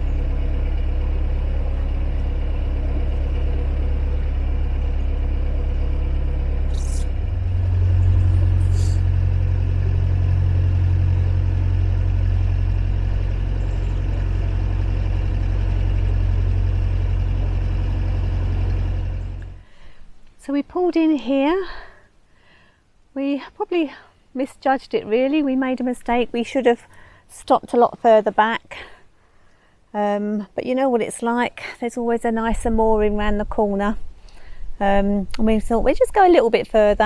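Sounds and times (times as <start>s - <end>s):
diesel boat engine running: 0.0s - 20.0s.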